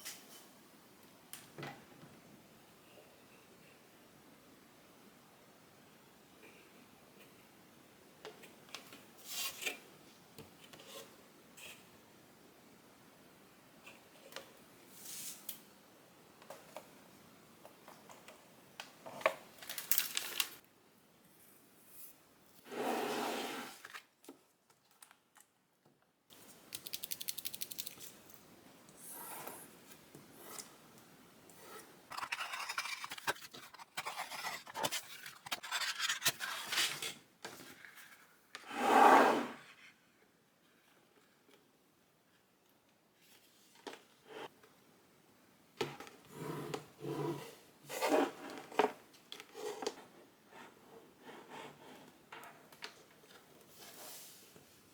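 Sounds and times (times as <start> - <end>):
rubbing and scraping: 31.6 - 37.0.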